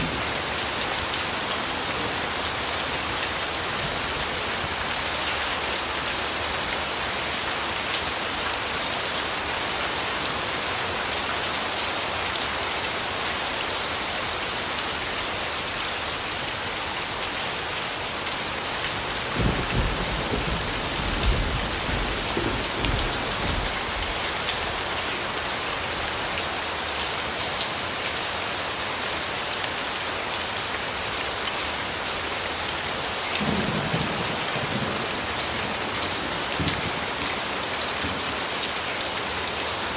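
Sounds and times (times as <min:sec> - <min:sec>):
rain hissing on surfaces: 0:00.0 - 0:39.9
low thunder rumbling: 0:19.4 - 0:24.2.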